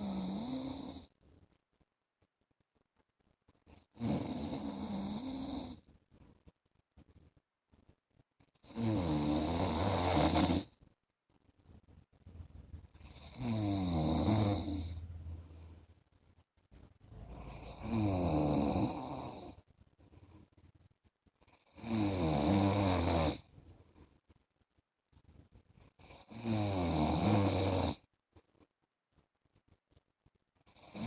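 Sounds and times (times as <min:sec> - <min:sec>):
man snoring: 0:00.0 - 0:01.0, 0:04.0 - 0:05.7, 0:08.7 - 0:10.7, 0:13.1 - 0:15.0, 0:17.2 - 0:19.6, 0:21.8 - 0:23.4, 0:26.2 - 0:28.0.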